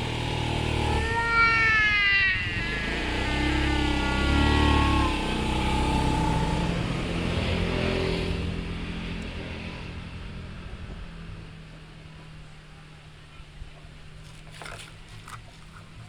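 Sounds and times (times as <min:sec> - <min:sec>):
vehicle engine passing by: 0:00.0 - 0:12.6.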